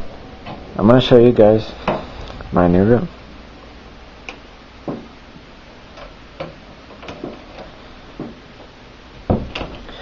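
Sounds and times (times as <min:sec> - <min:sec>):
faint background hum: 0:00.0 - 0:10.0.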